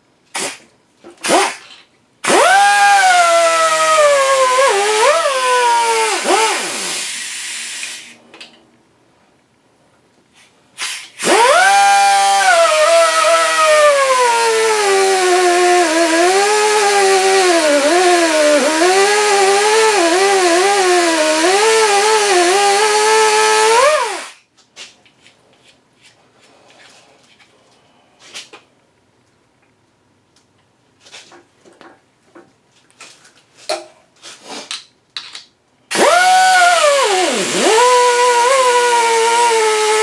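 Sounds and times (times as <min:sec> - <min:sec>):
air die grinder running: 0:35.9 - 0:40.0.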